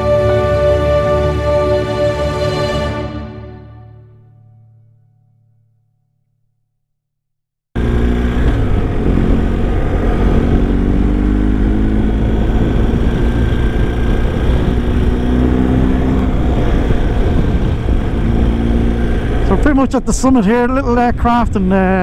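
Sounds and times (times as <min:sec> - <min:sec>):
motorcycle engine running: 0:07.8 - 0:22.0
wind rush on microphone: 0:08.2 - 0:22.0.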